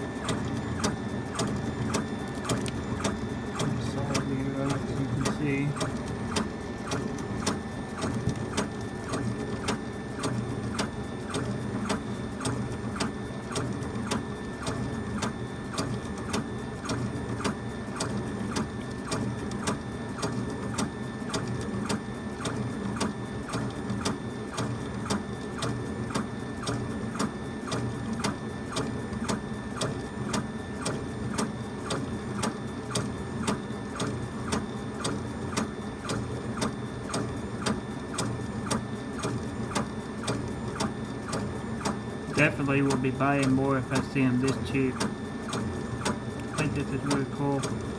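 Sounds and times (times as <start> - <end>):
stepper motors humming: 0.0 - 19.7, 31.0 - 47.9.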